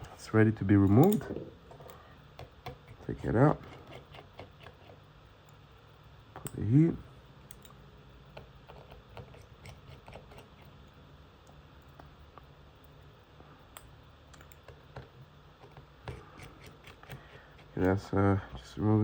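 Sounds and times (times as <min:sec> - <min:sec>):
low steady hum: 0:00.0 - 0:19.0
small tools clicking and tapping: 0:00.8 - 0:03.0, 0:13.7 - 0:18.6.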